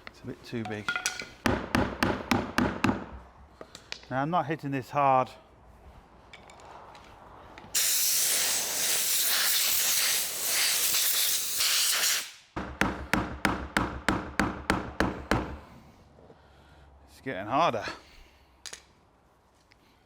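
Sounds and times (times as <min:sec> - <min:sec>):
loud steady hiss: 0:07.8 - 0:12.6.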